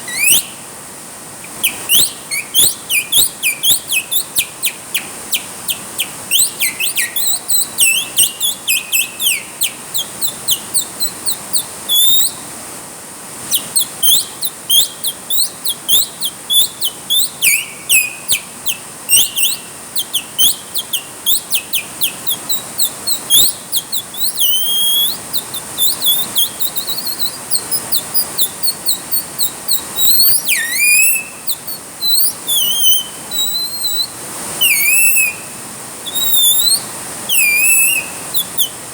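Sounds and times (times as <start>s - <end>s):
rain hissing: 0.0s - 38.9s
songbird chirping and whistling: 0.1s - 0.6s, 1.5s - 12.4s, 13.5s - 38.8s.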